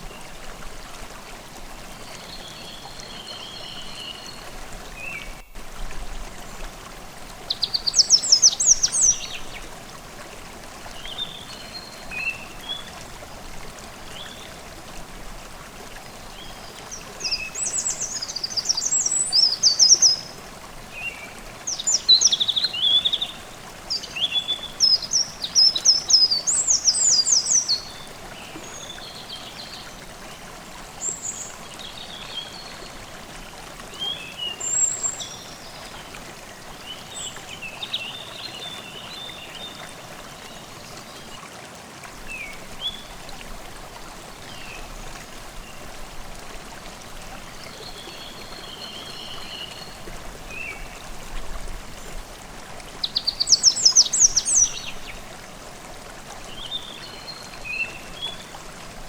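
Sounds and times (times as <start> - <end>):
stream babbling: 0.0 - 59.0
songbirds singing: 7.4 - 9.7, 16.3 - 33.0, 34.0 - 41.4, 53.0 - 55.3.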